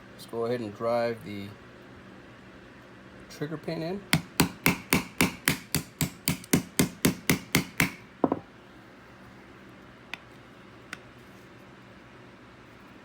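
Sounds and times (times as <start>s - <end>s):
small hammer tapping metal pin: 4.2s - 8.4s.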